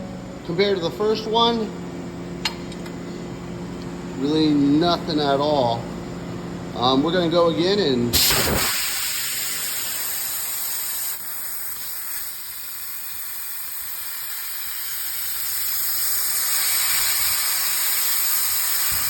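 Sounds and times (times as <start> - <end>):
laser cutter gas hiss: 8.1 - 19.0.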